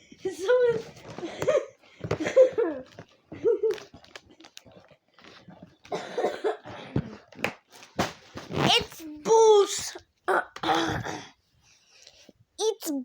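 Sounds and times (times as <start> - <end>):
person coughing: 5.9 - 7.0.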